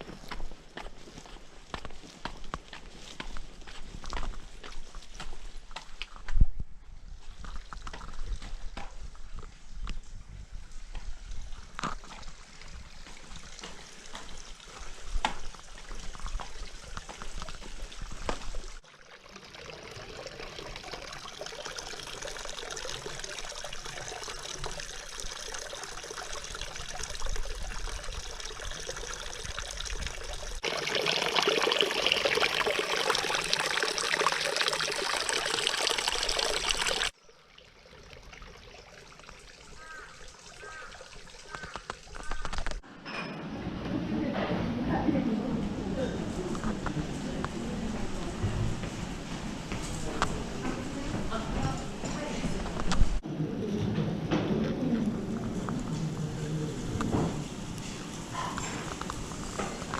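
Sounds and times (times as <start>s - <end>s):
water trickling and dripping: 7.0s - 42.8s, 54.7s - 59.9s
flowing water rushing: 11.7s - 42.8s.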